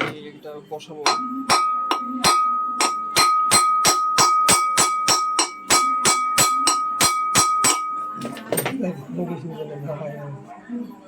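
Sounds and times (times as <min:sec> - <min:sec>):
hammer striking metal: 0:00.0 - 0:00.3, 0:01.0 - 0:08.8
high metallic ring: 0:01.1 - 0:08.8.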